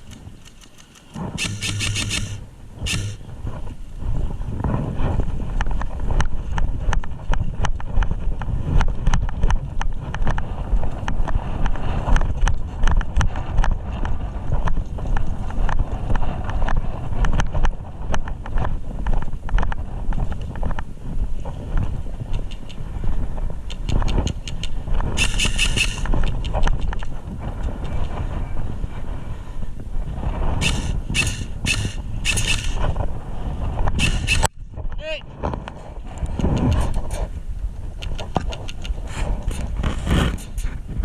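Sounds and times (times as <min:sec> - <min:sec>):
sharp clicks and knocks: 0:00.0 - 0:03.2, 0:23.7 - 0:28.2, 0:30.6 - 0:32.9, 0:33.9 - 0:34.6, 0:38.0 - 0:40.8
wind rumbling on microphone: 0:00.0 - 0:41.0.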